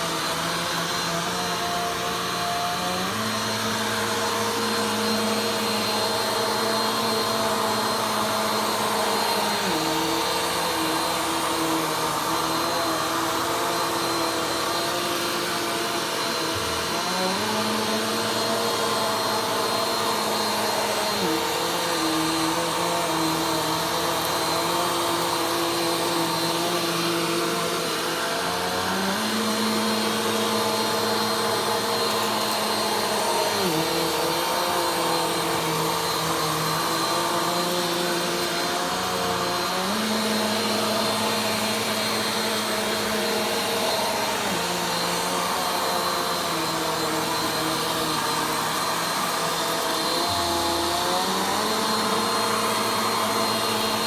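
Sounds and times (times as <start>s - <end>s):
vacuum cleaner running: 0.0s - 54.0s.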